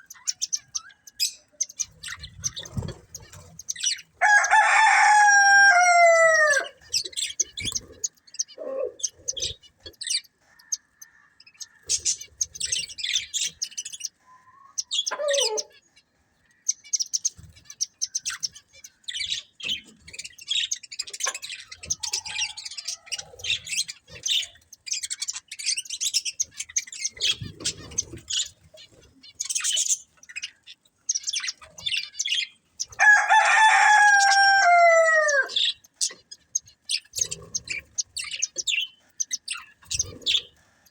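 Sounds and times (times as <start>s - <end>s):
budgerigars chirping: 0.0s - 40.9s
rooster crowing: 4.2s - 6.8s, 33.0s - 35.6s.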